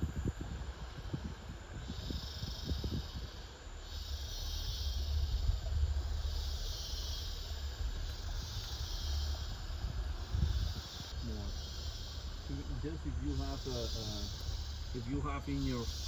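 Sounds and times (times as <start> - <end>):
insects droning: 0.0 - 16.0
low steady rumble: 0.0 - 16.0.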